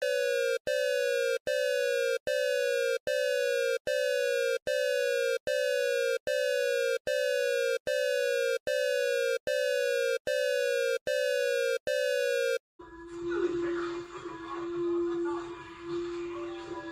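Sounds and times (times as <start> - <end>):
electronic alarm beeping: 0.0 - 12.6.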